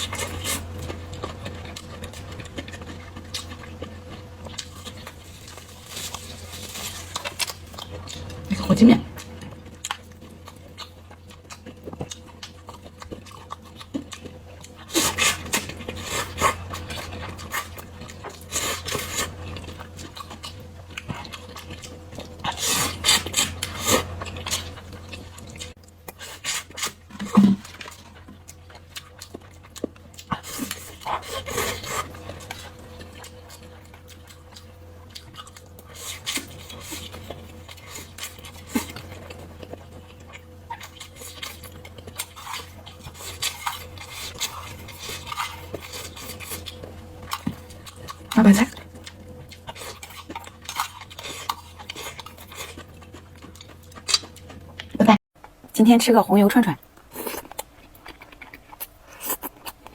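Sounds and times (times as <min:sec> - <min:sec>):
slurping and chewing noodles: 0:00.0 - 0:55.2, 0:57.0 - 0:59.9
steady low hum: 0:00.0 - 0:59.9.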